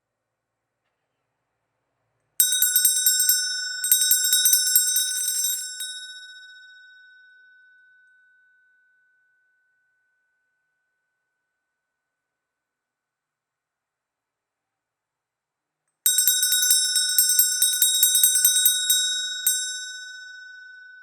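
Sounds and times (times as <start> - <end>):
handbell tinkling: 2.4 - 11.1, 16.1 - 21.0.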